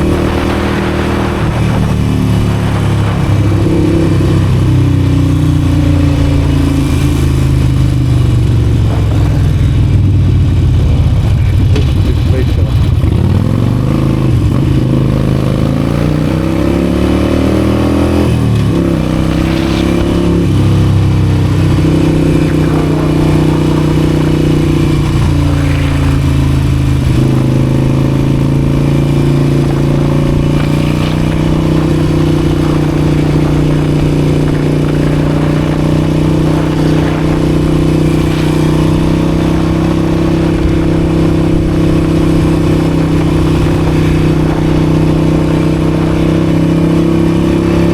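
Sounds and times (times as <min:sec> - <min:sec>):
motorcycle engine accelerating: 0:00.0 - 0:47.9.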